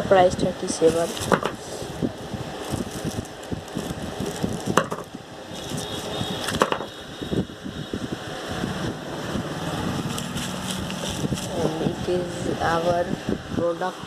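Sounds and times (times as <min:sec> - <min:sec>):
packaging rustling: 0:00.9 - 0:01.5, 0:02.5 - 0:06.6, 0:10.0 - 0:11.6.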